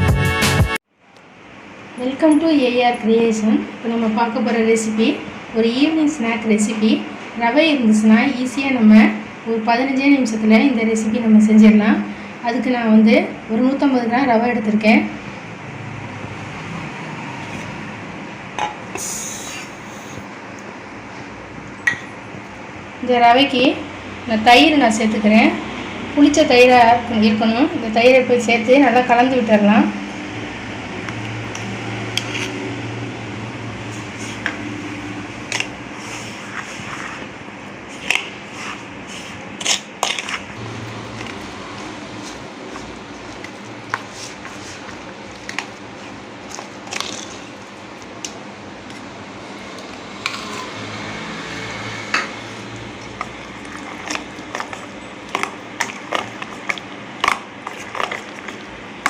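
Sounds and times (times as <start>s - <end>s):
spoon scraping a bowl: 31.6s - 32.6s, 37.9s - 40.5s, 49.8s - 50.8s, 51.4s - 58.7s
low hum: 40.5s - 44.0s.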